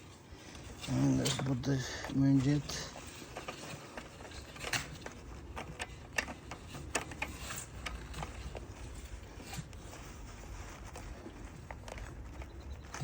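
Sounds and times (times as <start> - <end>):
small metal parts clicking: 0.6 - 9.7.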